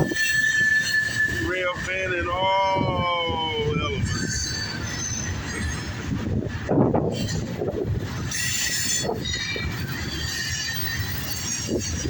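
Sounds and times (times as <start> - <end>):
faint wheel squeal: 0.0 - 1.5
train wheels rumbling on rails: 0.0 - 12.0.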